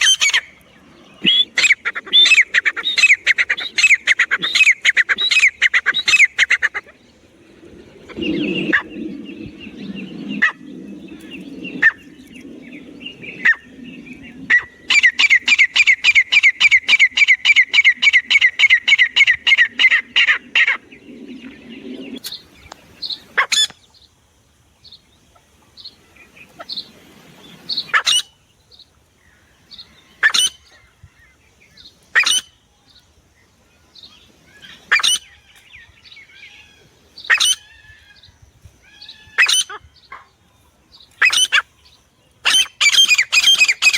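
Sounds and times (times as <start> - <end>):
francolin calling: 0.0 - 24.1, 34.0 - 43.9.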